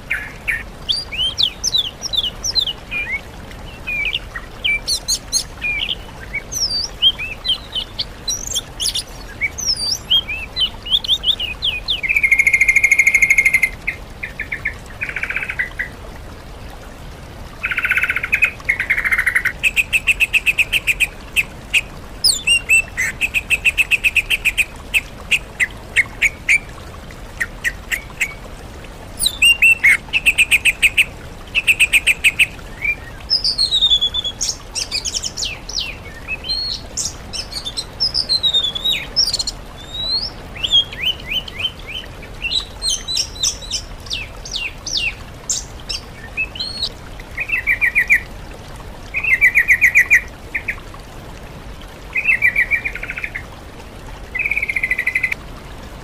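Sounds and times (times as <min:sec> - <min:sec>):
songbird buzzy trills: 0:00.0 - 0:15.6.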